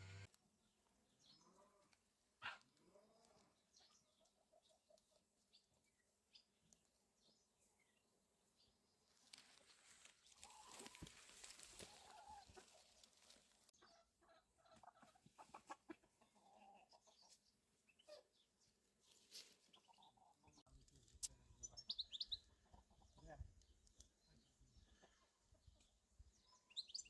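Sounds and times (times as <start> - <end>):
chickens clucking: 3.3 - 5.2, 10.3 - 18.4, 19.6 - 20.7, 21.3 - 23.5, 24.7 - 26.7.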